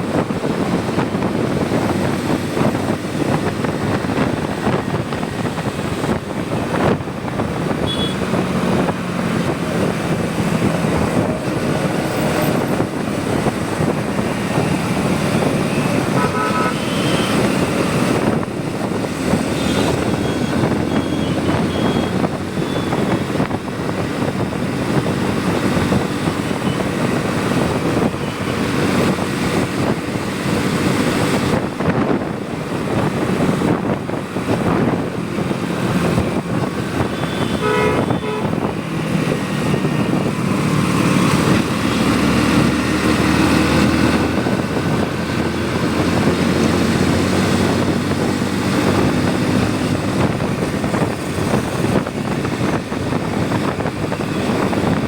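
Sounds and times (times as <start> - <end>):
motorcycle engine running: 0.0 - 55.0
wind rush: 0.0 - 55.0
vehicle horn toots: 7.8 - 8.2, 15.7 - 17.5, 19.6 - 22.1, 37.0 - 38.7.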